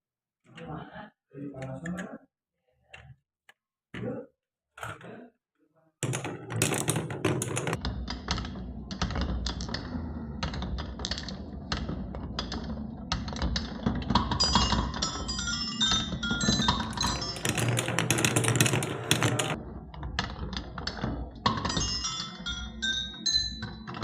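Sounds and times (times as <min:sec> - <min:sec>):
marbles clattering down wooden run: 0:06.0 - 0:07.8, 0:11.0 - 0:19.6, 0:21.5 - 0:23.6
ringing tones: 0:14.2 - 0:19.6, 0:21.5 - 0:24.0.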